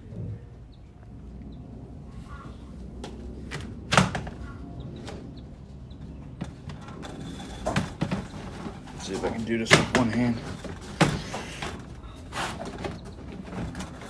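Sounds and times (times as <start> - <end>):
sharp knocks and clunks: 6.1 - 14.0.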